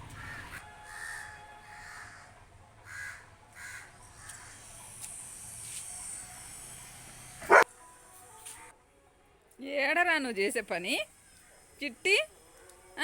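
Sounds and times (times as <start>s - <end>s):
crows cawing: 0.2s - 1.2s, 1.8s - 2.3s, 2.9s - 3.9s
dog barking: 7.4s - 7.6s.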